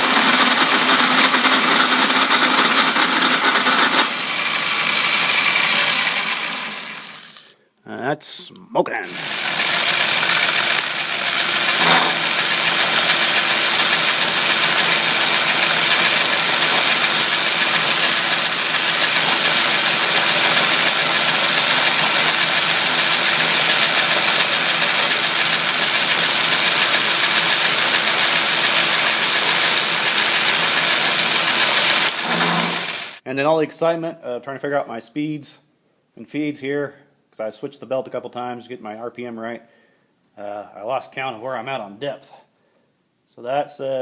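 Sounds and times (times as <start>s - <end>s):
motor and belt hum: 9.2s - 33.1s.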